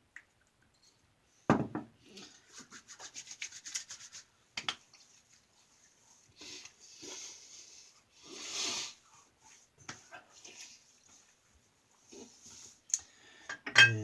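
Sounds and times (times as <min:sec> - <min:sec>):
hands rubbing skin: 0:02.5 - 0:07.2.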